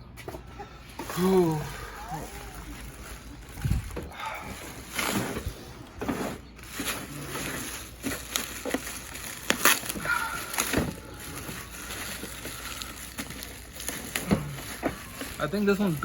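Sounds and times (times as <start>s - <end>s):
packaging rustling and crinkling: 0.9s - 16.0s.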